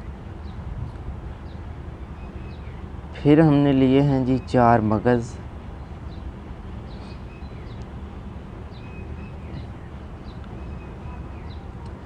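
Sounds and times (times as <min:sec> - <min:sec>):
faint bird chirps: 0:01.4 - 0:02.9, 0:05.8 - 0:12.0.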